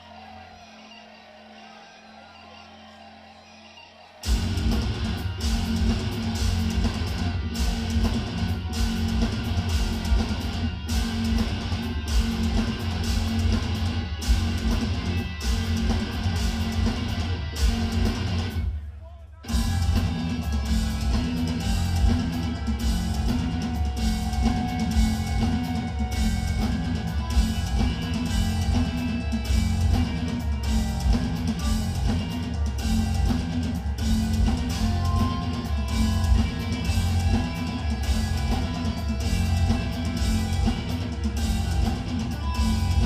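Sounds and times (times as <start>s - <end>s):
metal band playing live: 3.7s - 18.8s, 19.4s - 43.0s.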